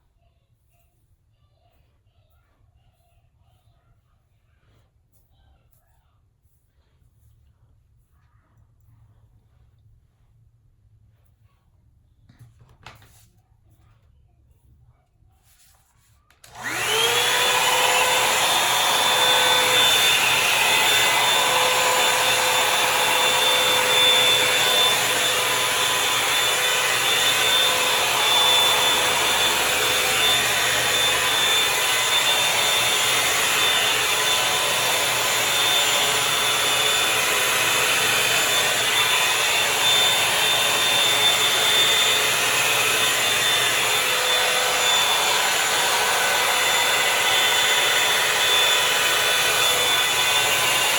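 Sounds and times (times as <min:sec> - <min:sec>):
hair dryer motor whine: 0:16.4 - 0:50.9.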